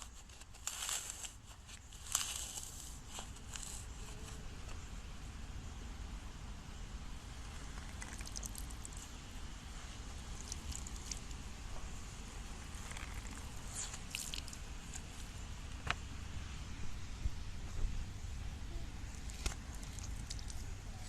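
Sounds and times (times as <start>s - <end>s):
soft material crackling and squishing: 0.0s - 4.9s, 7.4s - 16.0s, 19.0s - 21.0s
low steady hum: 0.0s - 21.0s.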